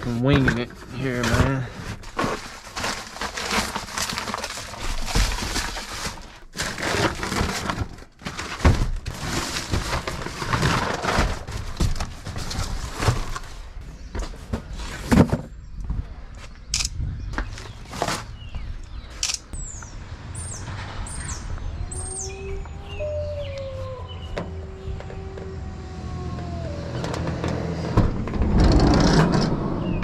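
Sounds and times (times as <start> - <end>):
handling rustling: 0.0 - 15.5.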